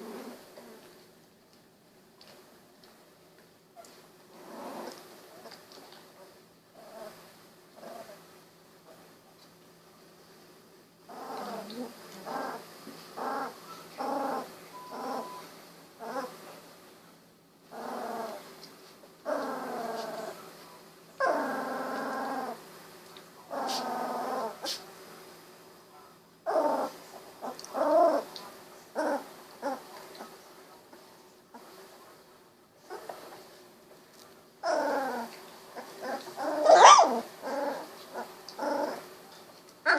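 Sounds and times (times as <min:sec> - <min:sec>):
puppies whimpering and crying: 0:13.2 - 0:15.4, 0:34.6 - 0:39.0.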